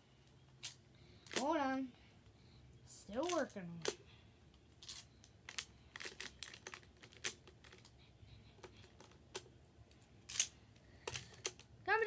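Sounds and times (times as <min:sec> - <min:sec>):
magnetic blocks clicking together: 0:03.1 - 0:04.0.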